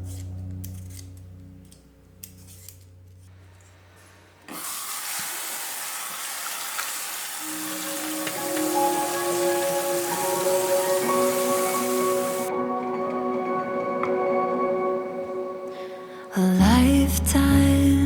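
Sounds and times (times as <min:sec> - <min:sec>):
background music: 0:00.0 - 0:03.3, 0:07.4 - 0:18.0
steady hiss: 0:04.5 - 0:12.5.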